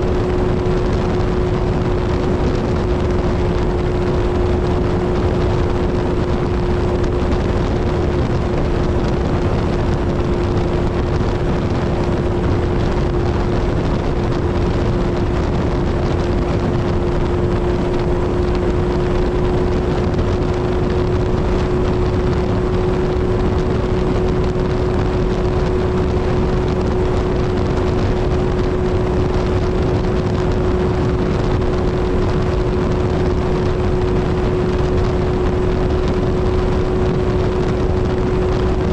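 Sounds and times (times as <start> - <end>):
motorcycle engine cruising: 0.0 - 38.9
wind rush: 0.0 - 38.9.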